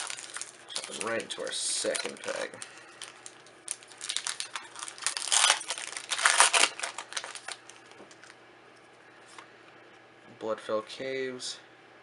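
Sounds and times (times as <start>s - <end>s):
foil wrapper crinkling and tearing: 0.0s - 8.4s.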